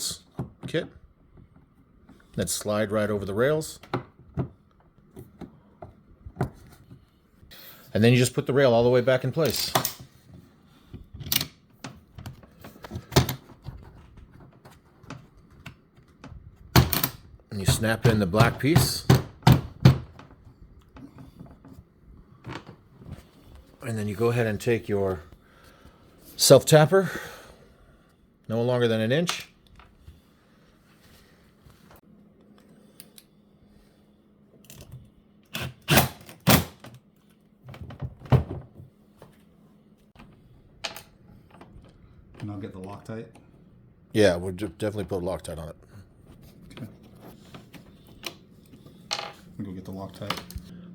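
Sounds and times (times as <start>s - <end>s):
tools clattering: 9.4s - 10.1s.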